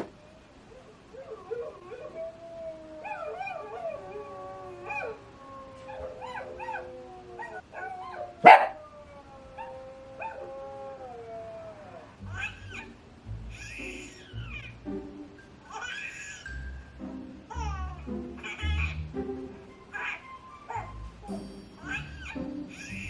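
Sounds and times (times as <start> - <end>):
dogs howling together: 0.0 - 12.9, 19.8 - 23.0.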